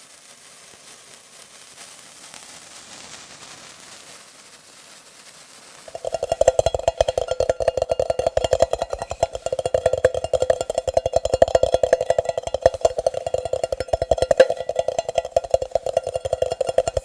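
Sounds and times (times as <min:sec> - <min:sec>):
fingers tapping on hollow object: 0:05.9 - 0:17.0.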